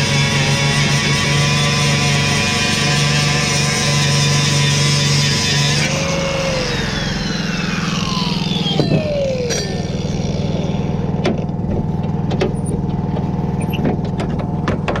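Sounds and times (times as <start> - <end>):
vehicle engine running: 6.1 - 15.0.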